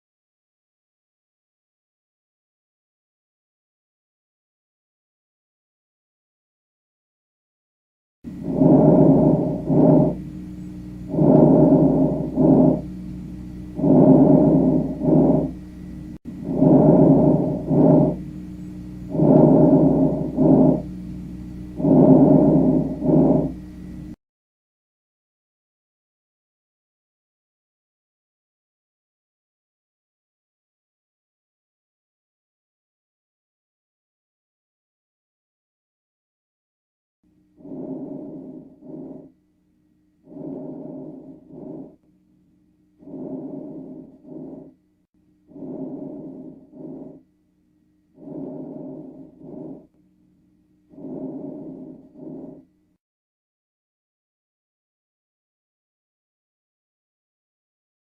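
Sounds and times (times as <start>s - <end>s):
faint steady hum: 8.3s - 24.2s, 37.3s - 53.0s
breath sounds through stethoscope: 8.4s - 10.2s, 11.0s - 13.0s, 13.8s - 15.6s, 16.2s - 18.2s, 19.1s - 20.9s, 21.7s - 23.6s, 37.6s - 39.3s, 40.2s - 42.1s, 43.0s - 44.8s, 45.5s - 47.2s, 48.2s - 50.0s, 50.9s - 52.7s.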